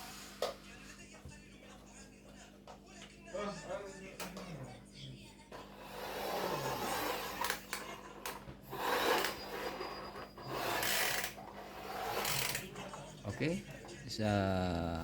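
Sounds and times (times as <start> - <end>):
laptop rubbing and scraping on surface: 5.6 - 7.7, 8.7 - 12.8.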